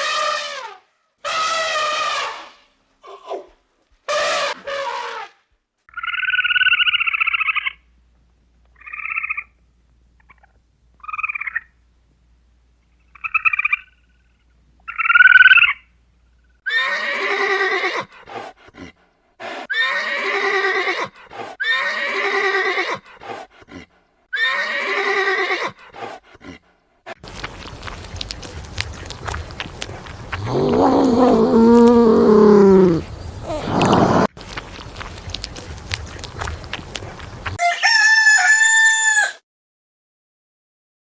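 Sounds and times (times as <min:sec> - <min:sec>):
animal calls: 0:29.0 - 0:34.3.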